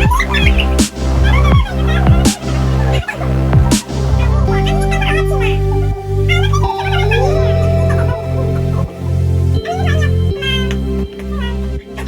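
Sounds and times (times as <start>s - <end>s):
sharp snare hits: 0.0s - 1.2s, 2.2s - 2.6s, 3.7s - 4.1s
dubstep music with heavy bass: 0.0s - 12.0s.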